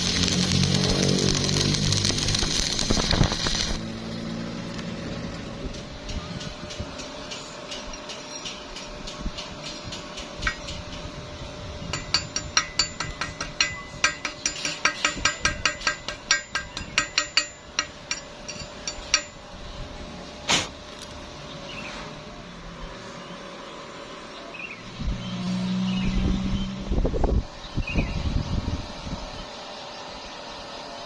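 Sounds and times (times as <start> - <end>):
hammer tapping steel: 5.4 - 11.0, 11.9 - 19.4.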